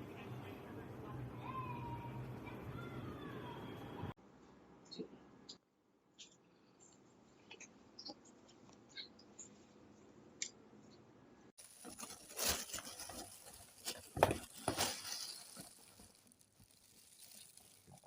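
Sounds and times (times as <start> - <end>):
objects rustling and clattering: 11.6 - 18.0.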